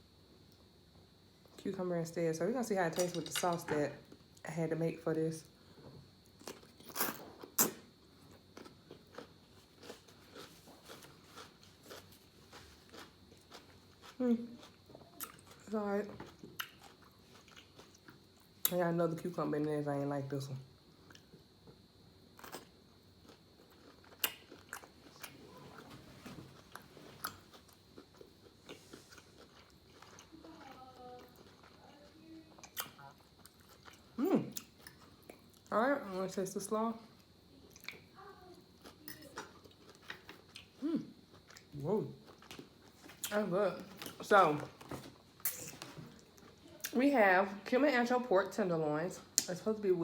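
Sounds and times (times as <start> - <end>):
crunchy chewing: 6.2 - 18.8, 21.0 - 35.7, 37.2 - 47.0
wet chewing: 16.2 - 18.5, 22.4 - 35.7.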